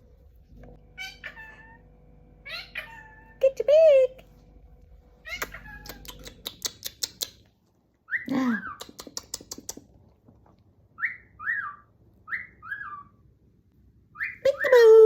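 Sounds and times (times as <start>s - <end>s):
cockatoo calling: 1.0s - 1.8s, 2.4s - 3.4s, 5.2s - 7.1s, 11.0s - 13.2s
bird clicks: 5.3s - 7.5s, 8.7s - 9.8s.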